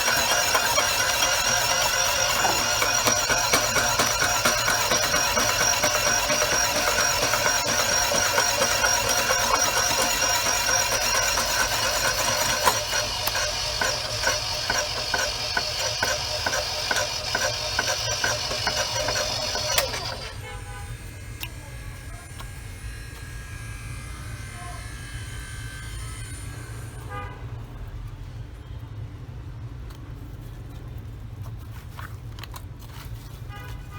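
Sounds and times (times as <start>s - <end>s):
regular pulsing: 0.0s - 20.4s
electric motor whine: 0.0s - 27.0s.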